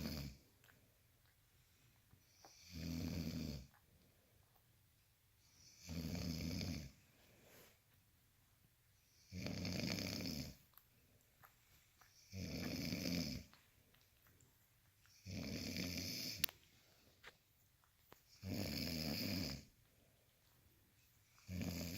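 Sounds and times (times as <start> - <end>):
person snoring: 2.5 - 3.7, 12.3 - 13.5, 15.2 - 16.5, 18.4 - 19.7, 21.4 - 21.9.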